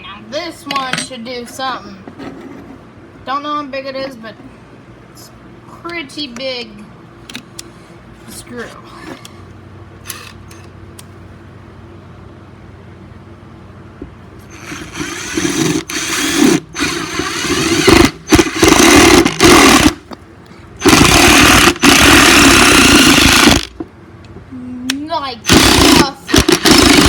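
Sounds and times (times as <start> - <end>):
impact driver hammering screw: 14.6 - 20.1, 20.8 - 23.8, 25.5 - 27.0.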